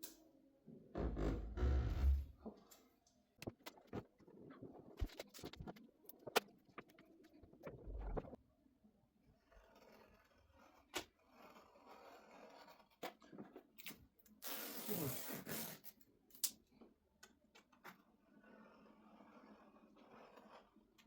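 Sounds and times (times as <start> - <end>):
vinyl film rubbing and crinkling: 3.4 - 8.4.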